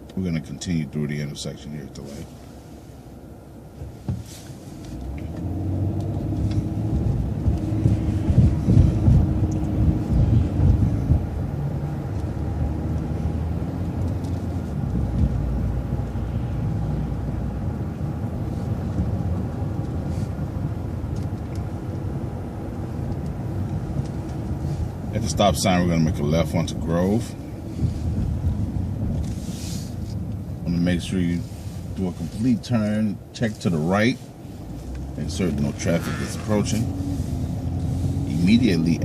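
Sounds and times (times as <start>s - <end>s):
bus engine pulling away: 4.3s - 25.4s, 34.5s - 39.0s.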